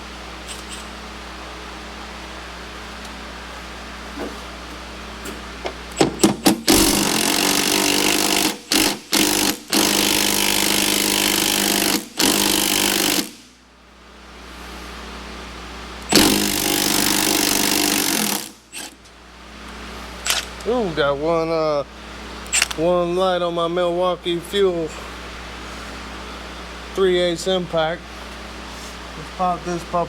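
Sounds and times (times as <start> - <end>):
impact wrench hammering bolt: 4.2 - 13.4, 16.1 - 18.9.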